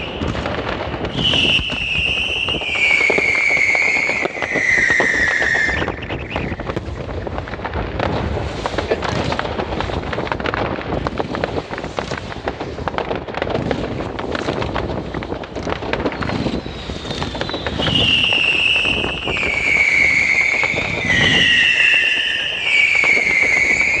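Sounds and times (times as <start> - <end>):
fireworks crackling and popping: 0.0 - 24.0
whistling firework: 0.0 - 24.0.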